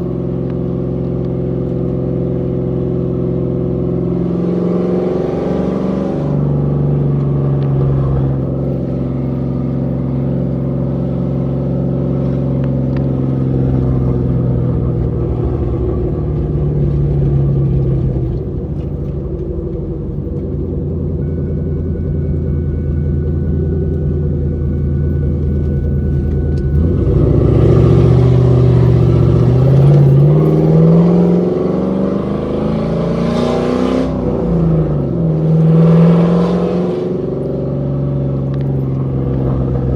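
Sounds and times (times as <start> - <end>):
car engine accelerating: 0.0 - 39.9.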